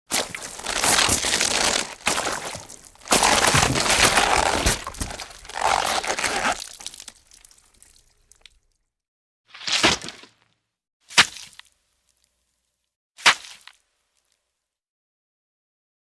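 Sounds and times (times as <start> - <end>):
bones breaking: 0.1 - 8.6, 9.6 - 10.4
wet guts splashing: 0.1 - 8.6.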